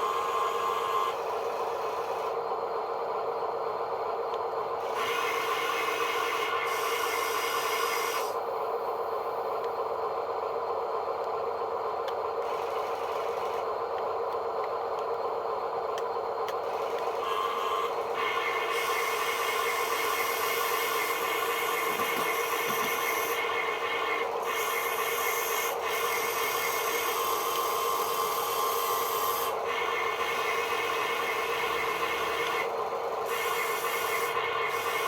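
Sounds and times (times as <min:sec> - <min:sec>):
small electric motor whining: 0:00.0 - 0:02.4, 0:04.8 - 0:08.4, 0:12.4 - 0:13.8, 0:16.5 - 0:35.0.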